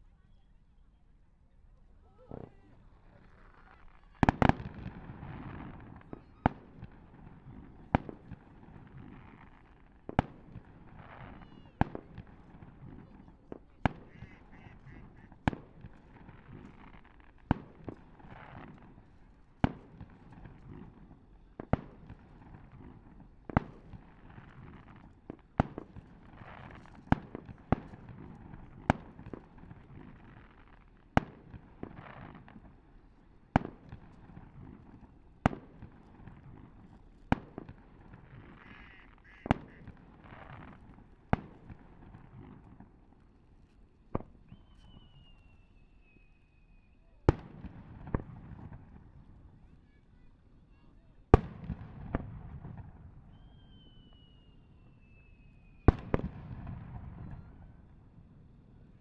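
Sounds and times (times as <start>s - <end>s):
crowd murmuring: 0.0s - 9.2s, 10.8s - 15.4s
fireworks bursting: 1.7s - 59.0s.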